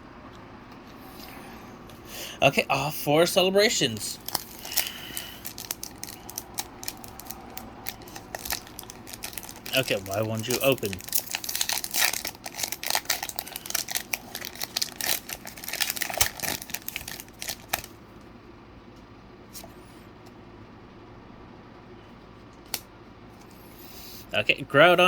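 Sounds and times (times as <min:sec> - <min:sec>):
foil wrapper tearing and crinkling: 0:04.2 - 0:17.9.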